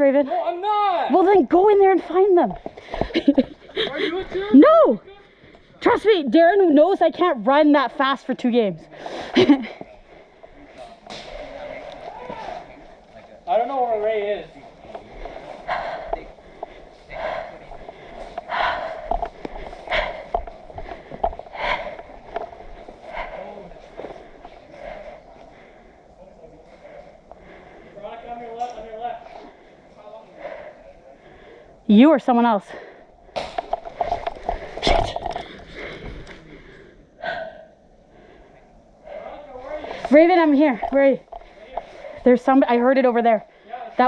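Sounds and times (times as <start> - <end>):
person breathing heavily: 8.8 - 42.8, 43.4 - 44.0
person breathing hard and gasping: 15.1 - 26.0.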